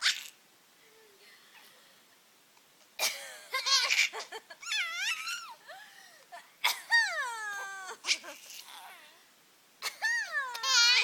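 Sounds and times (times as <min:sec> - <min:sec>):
high-pitched squealing laughter: 0:03.5 - 0:05.8, 0:06.6 - 0:09.0, 0:09.8 - 0:11.0.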